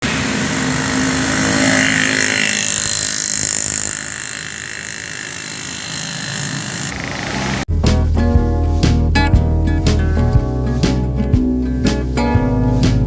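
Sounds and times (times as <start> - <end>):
road traffic passing: 0.0 - 7.7.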